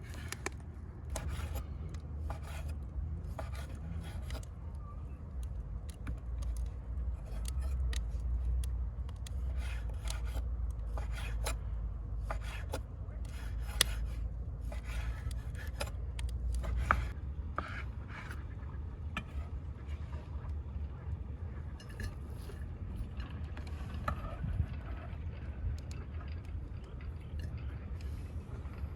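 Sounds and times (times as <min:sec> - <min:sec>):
vegetables being scraped and cut: 0:01.1 - 0:01.6, 0:02.2 - 0:04.5, 0:09.2 - 0:17.8.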